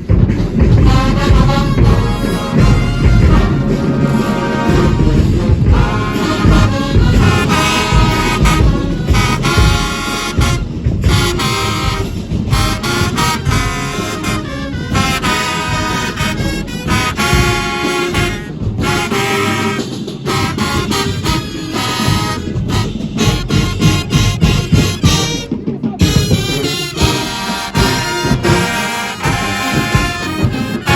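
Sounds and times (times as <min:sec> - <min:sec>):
brass blasting held chords: 0:00.0 - 0:30.9
marching band playing: 0:00.0 - 0:30.9
marching drums: 0:00.0 - 0:30.9.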